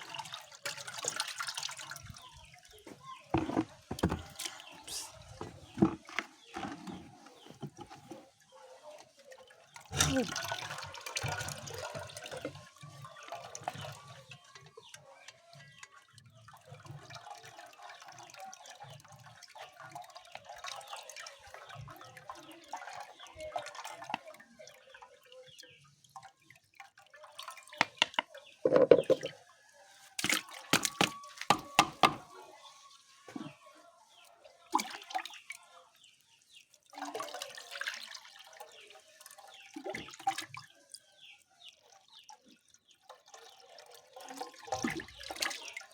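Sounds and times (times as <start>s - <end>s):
liquid pouring and sloshing: 0.0s - 45.9s
sharp knocks and clatters: 27.8s - 29.4s.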